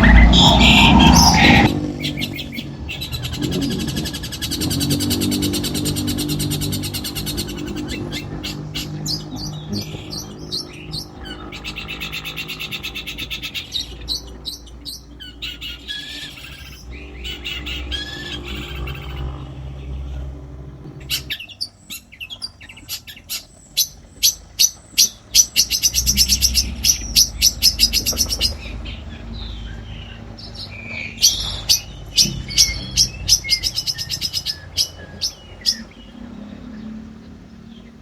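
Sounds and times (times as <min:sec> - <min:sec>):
low steady hum: 0:00.0 - 0:23.3
shrike singing: 0:00.0 - 0:38.0.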